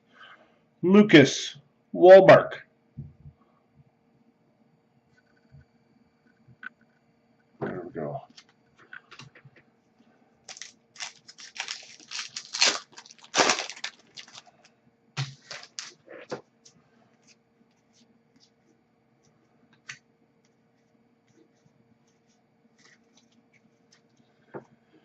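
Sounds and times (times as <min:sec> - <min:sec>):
foil wrapper tearing: 0:10.5 - 0:16.0
cards clicking and tapping: 0:15.2 - 0:16.0.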